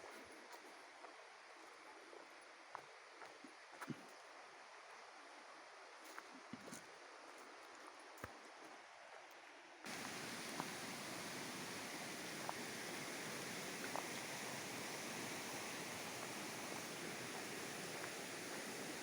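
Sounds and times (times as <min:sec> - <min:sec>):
water rushing: 0:09.9 - 0:19.0.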